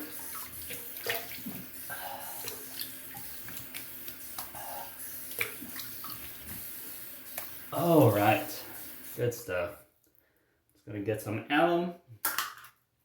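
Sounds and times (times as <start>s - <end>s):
water splashes from face rinsing: 0.0s - 9.0s
tap water running into sink: 0.0s - 9.2s.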